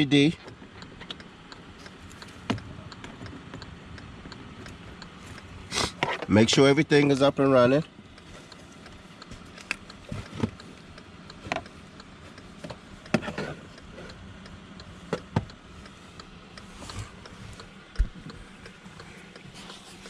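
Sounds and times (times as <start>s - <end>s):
faint steady hum: 0.0s - 20.0s
sharp clicks and light knocks: 0.3s - 19.8s.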